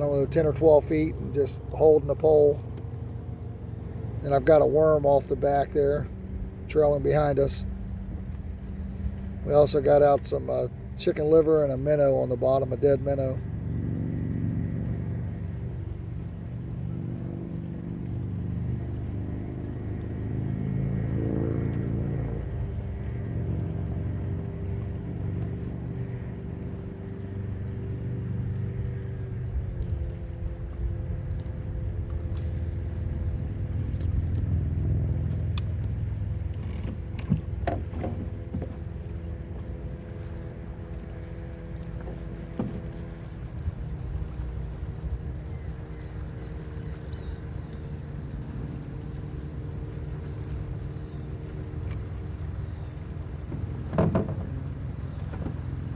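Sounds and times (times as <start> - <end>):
boat motor running: 0.0 - 55.9
sharp clicks and knocks: 35.3 - 38.8, 53.5 - 54.6.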